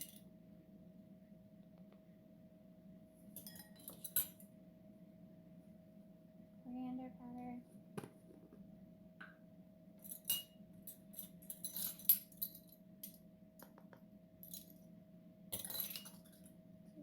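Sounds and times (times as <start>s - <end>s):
measuring spoons clinking on glass bowl: 3.4s - 4.4s, 10.1s - 13.2s, 15.6s - 16.5s.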